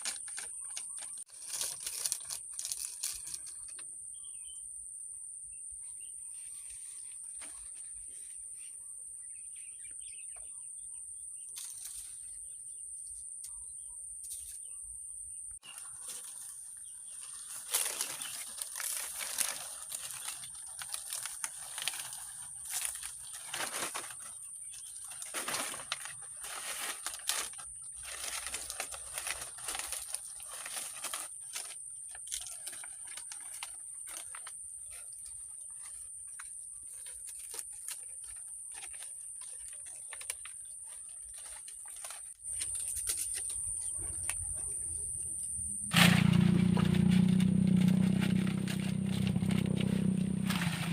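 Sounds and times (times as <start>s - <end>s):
rustling and crackling: 0.0s - 3.8s, 15.6s - 50.9s.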